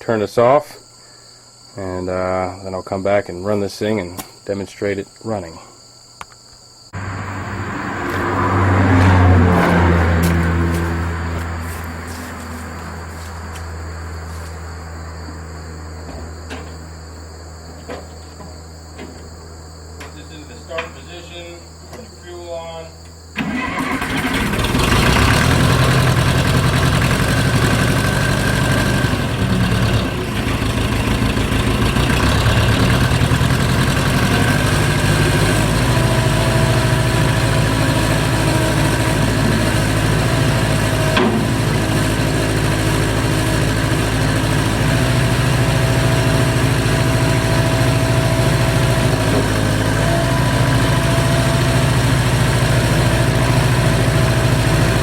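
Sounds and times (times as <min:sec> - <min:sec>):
backhoe engine idling: 0:07.0 - 0:15.9, 0:23.4 - 0:55.0.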